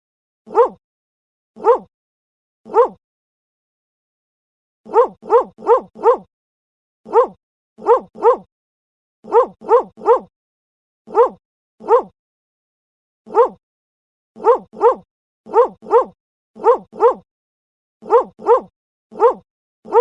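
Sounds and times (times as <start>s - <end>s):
dog barking: 0.5s - 0.8s, 1.6s - 1.9s, 2.7s - 3.0s, 4.9s - 6.3s, 7.1s - 8.5s, 9.2s - 10.3s, 11.1s - 12.1s, 13.3s - 13.6s, 14.4s - 17.3s, 18.0s - 20.0s.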